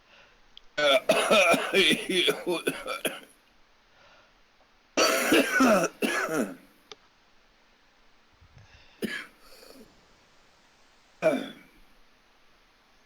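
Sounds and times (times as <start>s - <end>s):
person clearing throat: 0.8s - 3.2s, 5.0s - 6.6s, 9.0s - 9.8s, 11.2s - 11.7s
person coughing: 0.8s - 3.2s, 5.0s - 6.6s, 9.0s - 9.8s, 11.2s - 11.7s.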